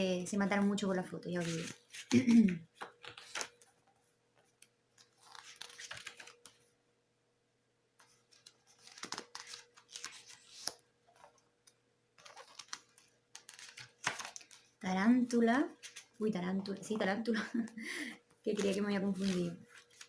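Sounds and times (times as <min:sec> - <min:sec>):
paper pages rustling: 0:01.3 - 0:03.7, 0:04.4 - 0:06.7, 0:08.0 - 0:14.8, 0:15.8 - 0:16.2, 0:18.5 - 0:20.0.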